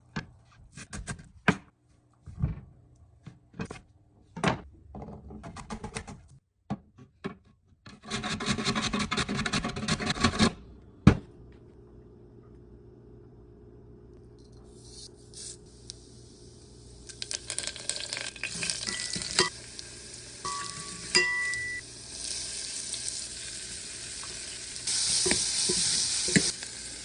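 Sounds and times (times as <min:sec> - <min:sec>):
cooking utensils knocking: 0:20.5 - 0:21.8.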